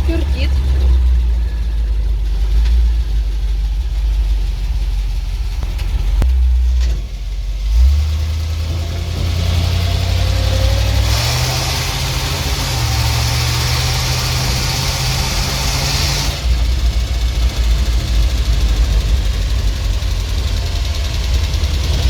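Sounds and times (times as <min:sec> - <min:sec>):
road and wind noise: 0:00.0 - 0:22.0
truck engine droning: 0:00.0 - 0:22.0.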